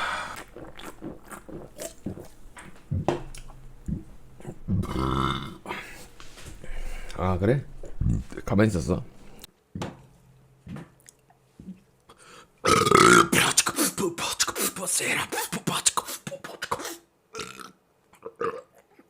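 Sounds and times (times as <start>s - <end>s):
person burping loudly: 4.6s - 5.8s, 12.6s - 13.7s, 17.3s - 19.0s.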